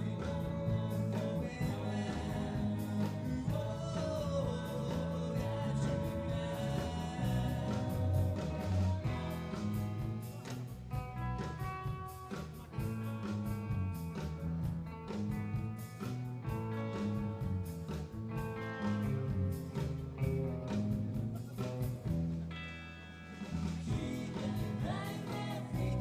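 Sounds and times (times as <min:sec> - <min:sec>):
person singing: 0:00.0 - 0:09.7, 0:23.8 - 0:26.0
live rock band playing: 0:00.0 - 0:26.0.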